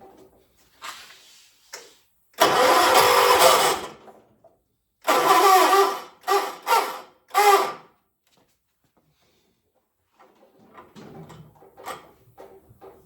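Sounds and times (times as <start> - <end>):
engine cranking by starter: 2.4 - 4.2, 5.0 - 7.8.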